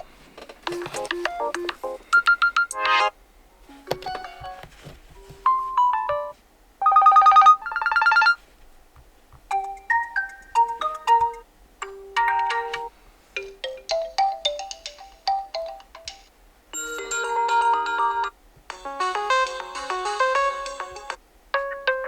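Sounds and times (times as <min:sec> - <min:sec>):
smartphone ringtones: 0:00.7 - 0:03.1, 0:05.8 - 0:08.4, 0:16.8 - 0:21.2.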